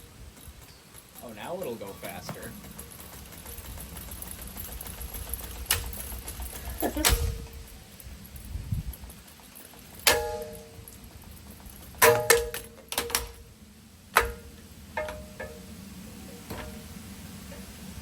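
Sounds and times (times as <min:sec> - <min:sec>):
ceiling fan smashed with metal clangs: 0:05.7 - 0:07.8, 0:09.7 - 0:13.5, 0:14.1 - 0:15.8, 0:16.4 - 0:17.6.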